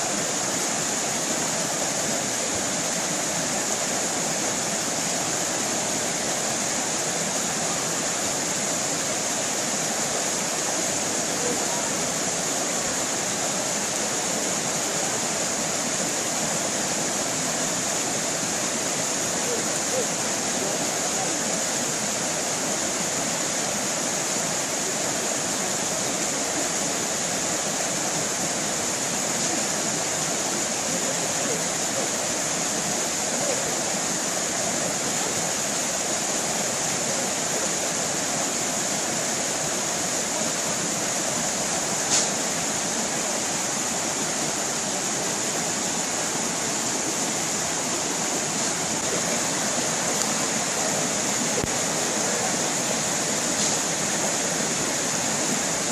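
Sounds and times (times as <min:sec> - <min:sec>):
stream rushing over a cascade: 0:00.0 - 0:55.9.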